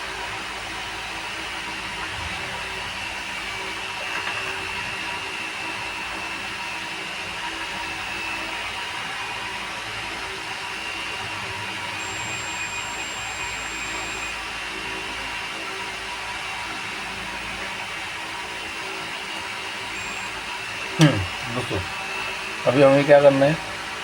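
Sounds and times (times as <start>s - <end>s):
thin high whine: 19.9s - 22.0s.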